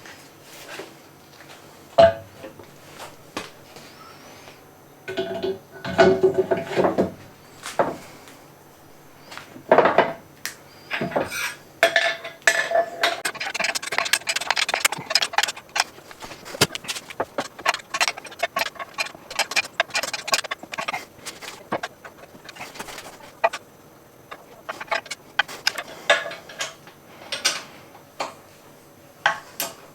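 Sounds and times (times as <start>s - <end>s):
metal parts and tools clattering: 11.0s - 23.6s, 24.3s - 26.6s.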